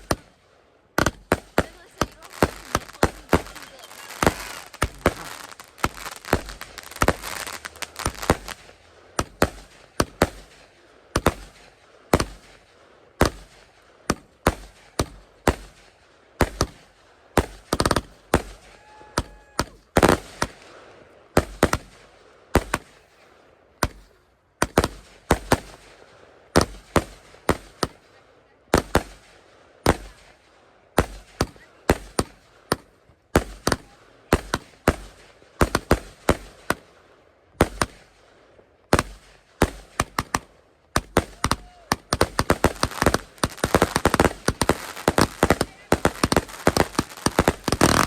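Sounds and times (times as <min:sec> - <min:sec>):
fireworks bangs: 0:00.0 - 0:30.4, 0:31.0 - 0:48.0
fireworks crackling: 0:00.0 - 0:48.0.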